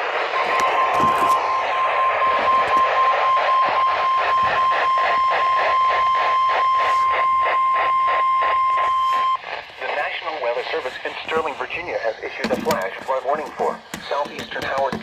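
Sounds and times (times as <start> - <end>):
steady high alarm tone: 0.0 - 9.6
radio static: 0.0 - 15.0.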